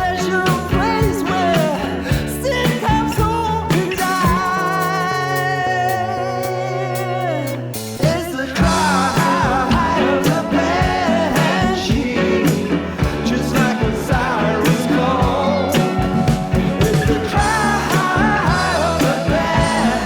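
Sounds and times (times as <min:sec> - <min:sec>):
person singing: 0:00.0 - 0:20.0
drum beat: 0:08.6 - 0:20.0
held chords: 0:08.6 - 0:20.0.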